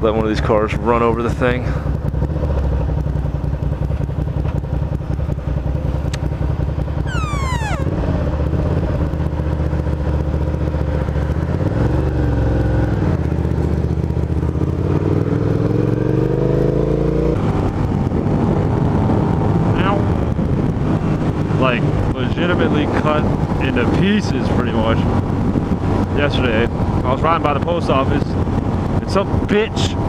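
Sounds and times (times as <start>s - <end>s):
motorcycle engine accelerating: 3.6s - 19.6s
falling whistle-like tone: 7.1s - 8.0s.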